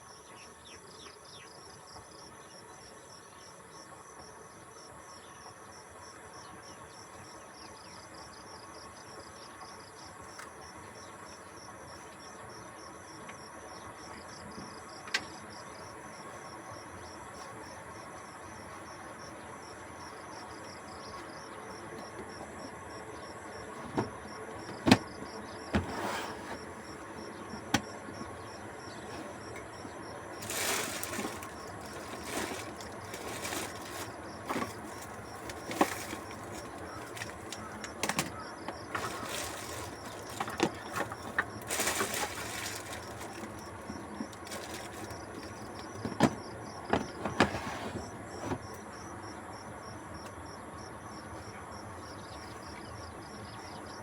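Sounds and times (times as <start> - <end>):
crickets chirping: 0.0 - 54.0
objects being handled: 30.4 - 48.6.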